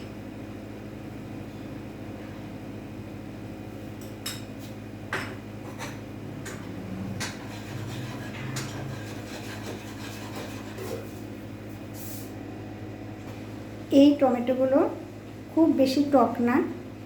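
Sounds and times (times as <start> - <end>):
steady low hum: 0.0 - 17.0
spoon scraping cooking pot: 6.4 - 11.1.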